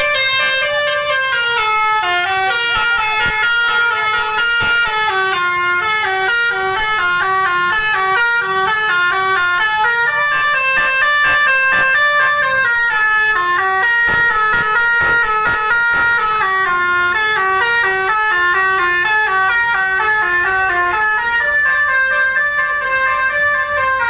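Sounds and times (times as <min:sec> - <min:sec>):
musical bus horn melody: 0:00.0 - 0:24.0.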